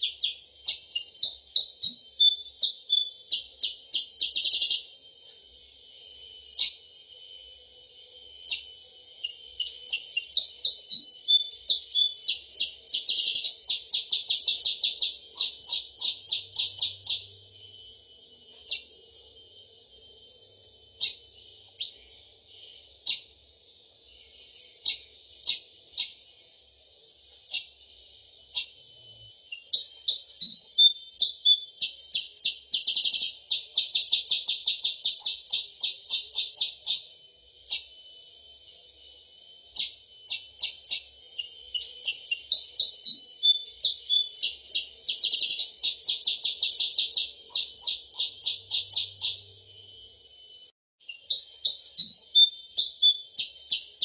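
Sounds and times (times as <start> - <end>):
bird chirps and rattling calls: 0.0 - 4.9, 8.5 - 17.4, 24.2 - 26.4, 27.4 - 27.8, 29.5 - 37.1, 39.8 - 49.5, 51.0 - 54.0.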